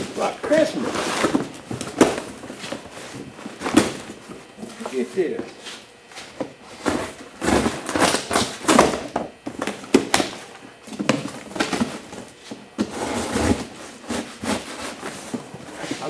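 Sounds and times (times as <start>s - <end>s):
duct tape ripping: 6.9s - 9.0s.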